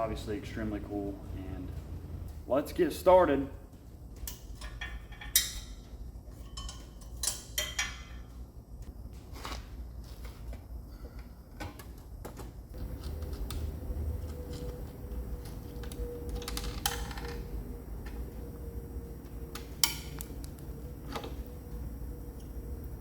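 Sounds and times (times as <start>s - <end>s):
steady hum with held tone: 0.0s - 23.0s
metal tools and parts clanking: 4.2s - 8.4s, 14.2s - 17.5s.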